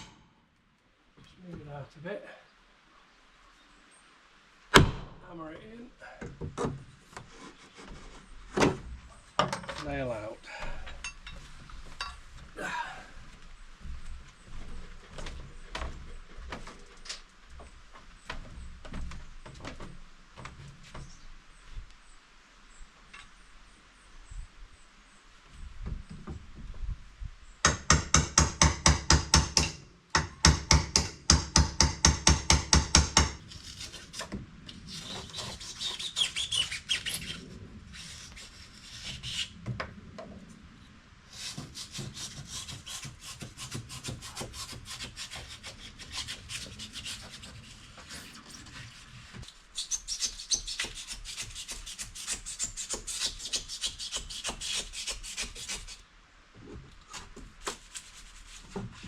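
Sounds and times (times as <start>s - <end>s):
scraping and rubbing of wood: 6.3s - 9.9s, 31.8s - 40.4s, 41.3s - 56.0s, 56.6s - 59.0s
fast rasping strokes on wood: 41.3s - 48.0s.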